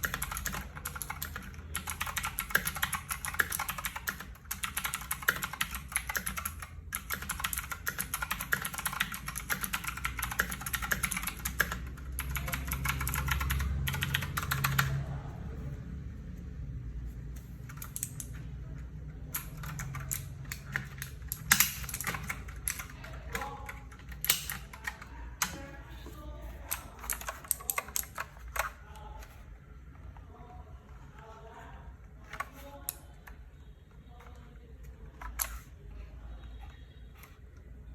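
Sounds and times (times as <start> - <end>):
mechanical keyboard typing: 0.0 - 15.1, 17.6 - 25.8, 26.5 - 29.3, 35.1 - 35.8.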